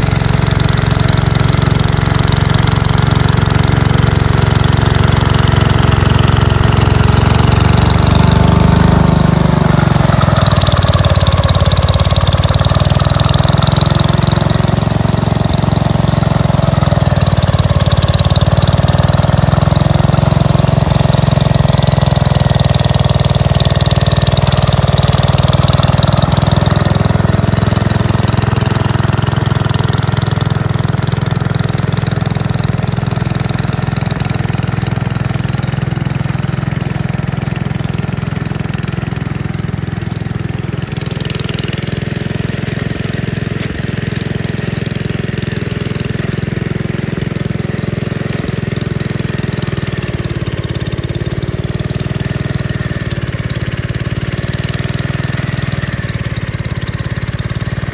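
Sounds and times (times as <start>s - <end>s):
tractor engine running: 0.0s - 57.9s.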